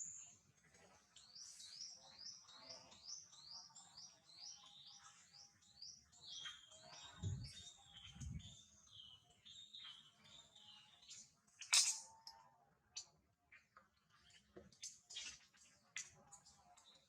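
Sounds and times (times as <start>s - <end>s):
songbird chirping: 0.0s - 17.0s.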